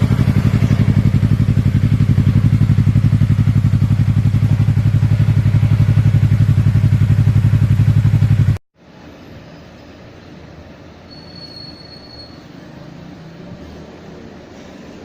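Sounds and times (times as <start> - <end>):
motorcycle engine idling: 0.0 - 8.6.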